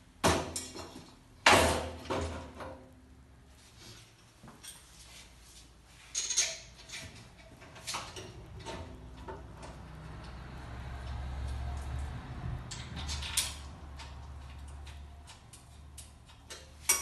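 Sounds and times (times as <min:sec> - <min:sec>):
metal parts clanking: 0:06.1 - 0:09.3.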